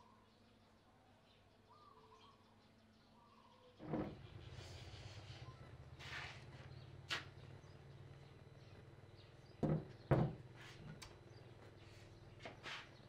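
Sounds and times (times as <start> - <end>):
loud knocks: 9.6 - 10.4.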